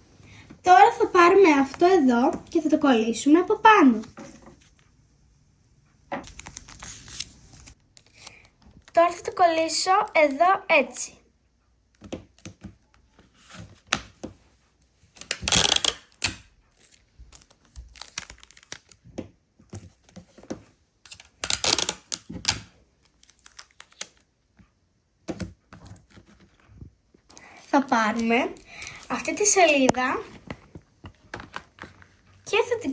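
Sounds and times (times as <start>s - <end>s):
paper and tape rustling: 6.2s - 10.4s, 15.1s - 19.0s, 19.6s - 24.3s, 25.6s - 32.9s.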